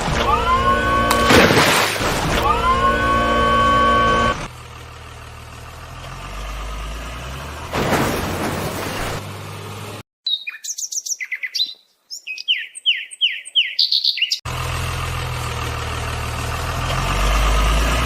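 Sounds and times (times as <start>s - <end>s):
engine idling: 2.0s - 6.2s, 14.5s - 18.0s
songbird chirping: 10.2s - 14.4s.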